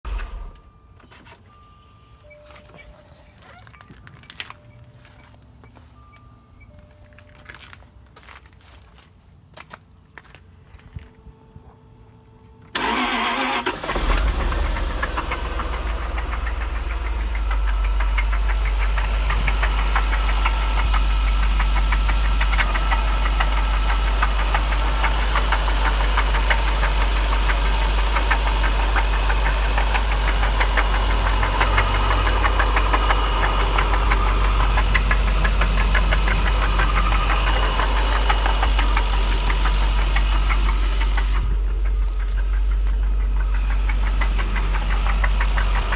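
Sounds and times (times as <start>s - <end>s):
car engine starting: 0.0s - 0.8s, 12.8s - 45.9s
engine idling with rapid knocking: 12.8s - 45.9s.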